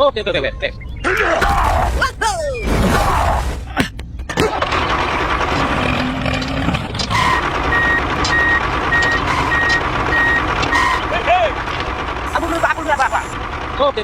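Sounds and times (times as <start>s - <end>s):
vehicle engine running: 4.0s - 14.0s
reversing alarm beeping: 7.0s - 11.5s.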